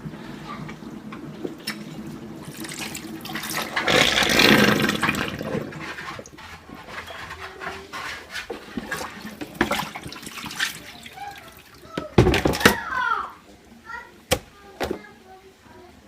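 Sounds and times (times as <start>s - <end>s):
water running from tap: 0.0s - 6.5s, 8.6s - 13.2s.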